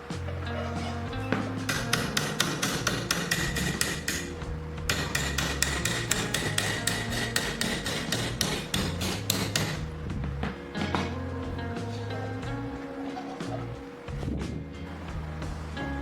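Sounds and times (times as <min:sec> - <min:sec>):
background music: 0:00.0 - 0:16.0
quick hammer taps: 0:01.6 - 0:09.8.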